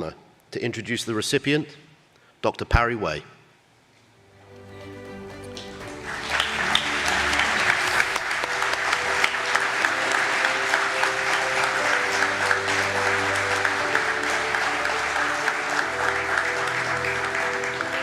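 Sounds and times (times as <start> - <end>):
instrumental music: 4.2 - 18.0
audience applauding: 5.4 - 18.0.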